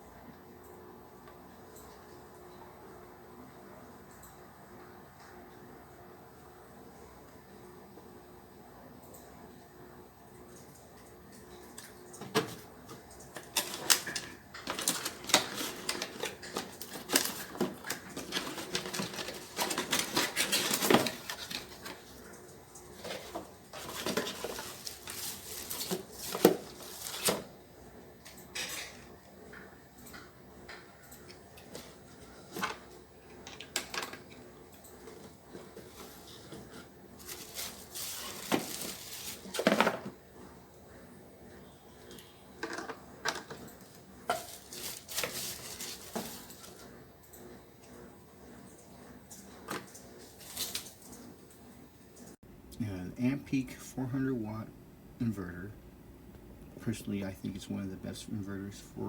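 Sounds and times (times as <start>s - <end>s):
hard objects clattering: 13.4s - 22.1s.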